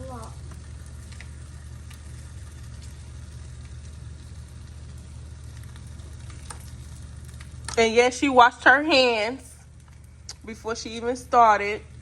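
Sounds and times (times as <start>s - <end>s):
bacon sizzling in a frying pan: 0.0s - 12.0s
steady low hum: 0.0s - 12.0s.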